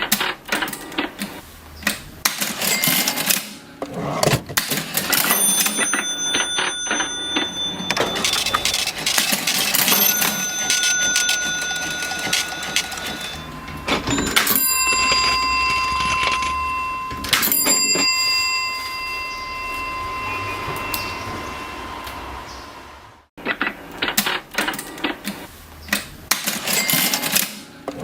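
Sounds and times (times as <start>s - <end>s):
cash register keys clacking: 2.3s - 19.2s, 26.3s - 28.0s
cash register bell ringing: 2.3s - 22.6s, 26.4s - 28.0s.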